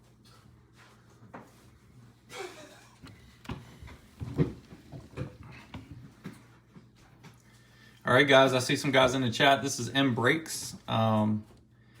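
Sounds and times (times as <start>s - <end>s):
objects knocking and thumping: 3.0s - 7.4s.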